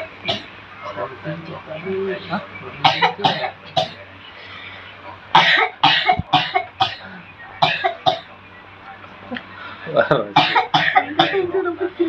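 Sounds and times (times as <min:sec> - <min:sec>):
person coughing: 0:10.4 - 0:11.4.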